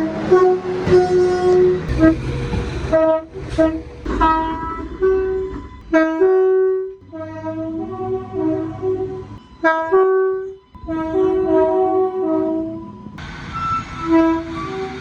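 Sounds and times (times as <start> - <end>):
train horn toots: 0.0 - 13.0, 13.6 - 15.0
low rumble: 0.8 - 9.2.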